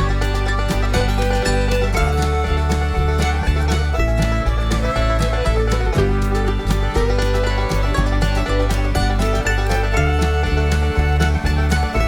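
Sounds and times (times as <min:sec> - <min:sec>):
upbeat country music: 0:00.0 - 0:12.0.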